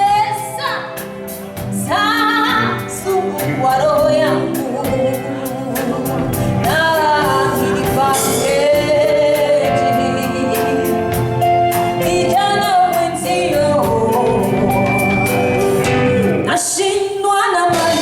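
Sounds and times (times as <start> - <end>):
live band playing: 0.0 - 18.0
person singing: 1.6 - 18.0.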